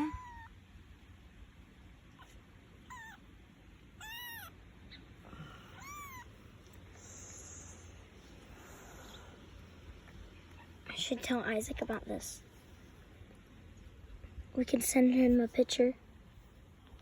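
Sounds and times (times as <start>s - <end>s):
kittens mewing faintly: 4.0s - 8.0s.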